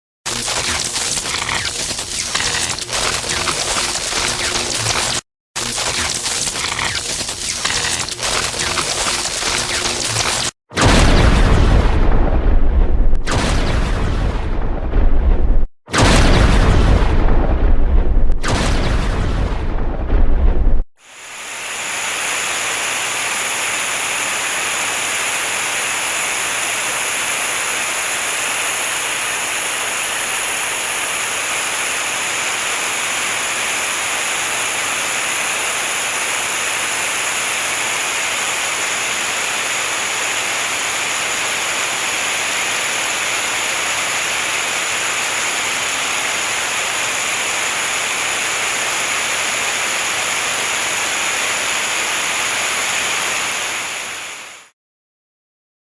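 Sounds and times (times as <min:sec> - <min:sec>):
steady rushing hiss: 0:21.0 - 0:54.2.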